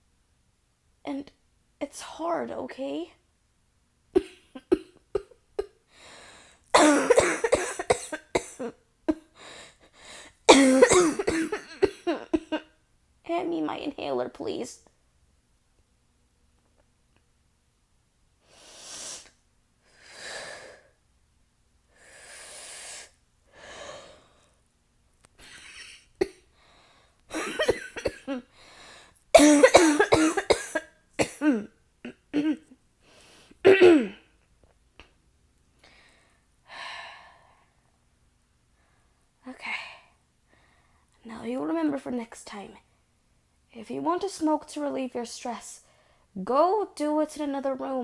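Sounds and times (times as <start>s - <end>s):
woman coughing harshly: 4.2s - 5.7s, 6.7s - 9.3s, 10.5s - 12.6s, 25.4s - 26.4s, 27.3s - 28.4s, 29.4s - 32.7s, 33.6s - 34.2s
woman breathing in heavily: 5.9s - 6.7s, 9.4s - 10.4s, 21.9s - 24.6s, 28.6s - 29.2s.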